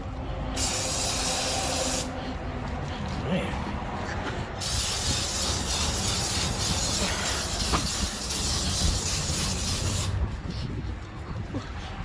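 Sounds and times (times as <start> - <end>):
aerosol can spraying hiss: 0.6 - 2.1, 4.6 - 10.2.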